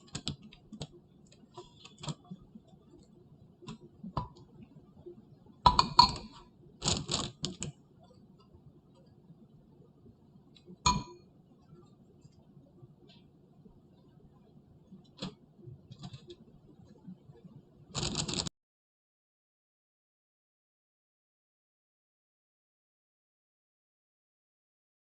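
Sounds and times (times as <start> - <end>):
utensils knocking against bowl: 5.7 - 6.4, 10.9 - 11.2.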